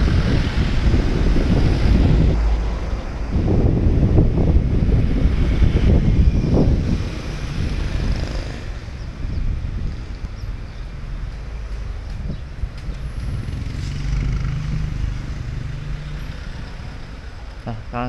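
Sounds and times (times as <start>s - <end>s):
steady low rumble: 0.0s - 7.8s.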